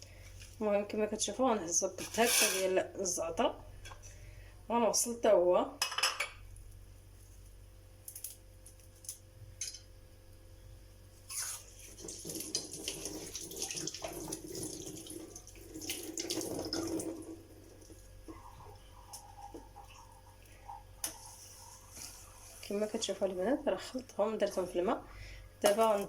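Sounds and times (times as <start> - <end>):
water sloshing in a pot: 11.3 - 23.3.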